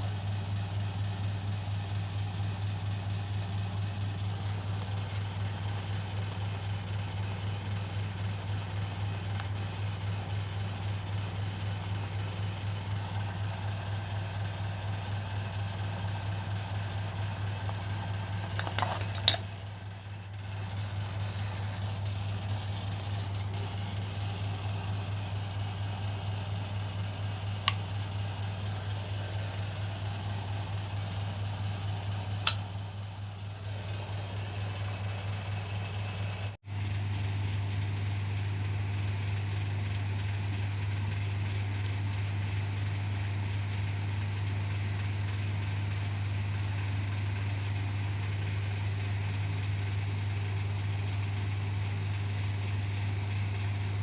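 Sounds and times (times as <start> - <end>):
washing machine motor humming: 0.0 - 54.0
clattering clicks: 18.4 - 19.5.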